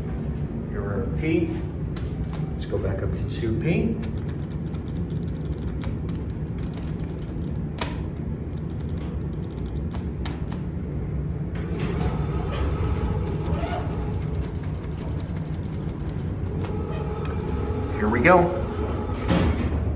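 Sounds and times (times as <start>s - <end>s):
creaking mechanical noise: 0.0s - 19.9s
elevator machinery humming: 0.0s - 19.9s
sharp clicks: 4.0s - 10.7s.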